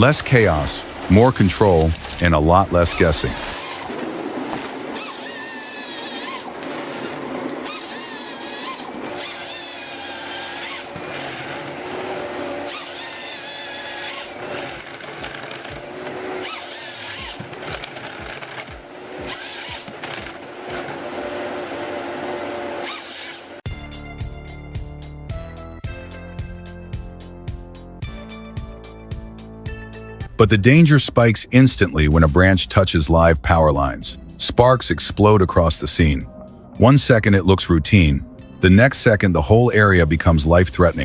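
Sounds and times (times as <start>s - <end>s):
machine hum: 0.0s - 23.6s
wood being cut: 0.0s - 23.7s
high-pitched saw whine: 4.9s - 14.7s.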